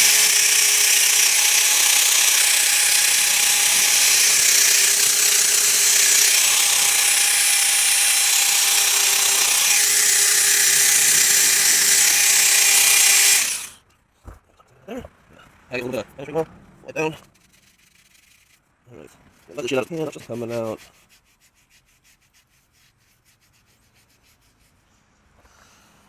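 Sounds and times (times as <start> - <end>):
wire wheel grinding metal: 0.0 - 13.8.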